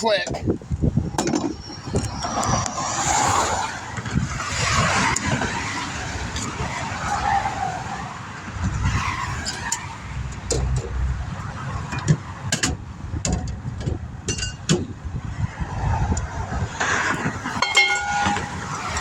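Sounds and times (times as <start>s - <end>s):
highway traffic rushing past: 0.1s - 19.0s.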